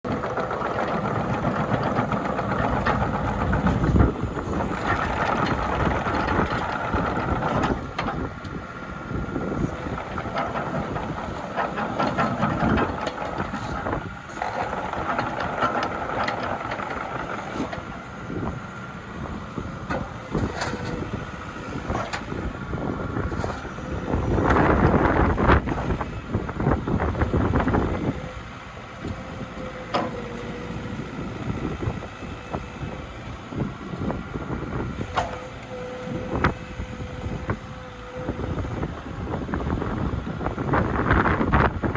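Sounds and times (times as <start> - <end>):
excavator diesel engine: 0.0 - 41.9.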